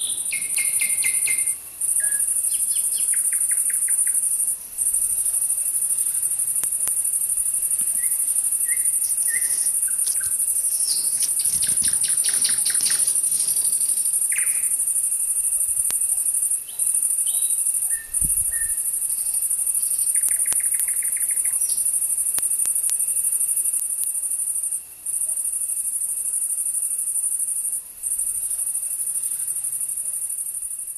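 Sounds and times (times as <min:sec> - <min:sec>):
songbirds chirping: 0:00.0 - 0:07.0, 0:07.6 - 0:14.8, 0:16.6 - 0:22.3
insect trill: 0:00.0 - 0:30.9.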